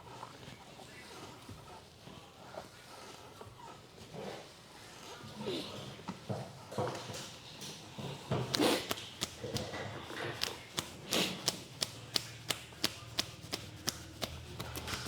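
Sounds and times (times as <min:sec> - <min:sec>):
hands slapping skin: 0:08.4 - 0:09.7, 0:10.4 - 0:15.0
swishing rubs on skin: 0:08.4 - 0:09.7, 0:10.4 - 0:15.0.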